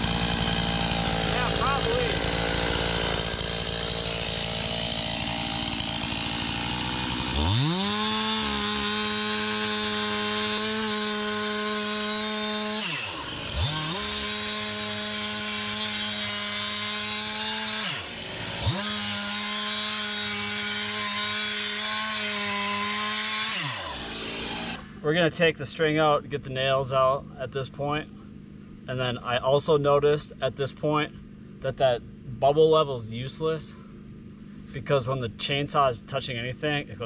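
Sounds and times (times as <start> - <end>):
chainsaw cutting log: 0.0 - 24.9.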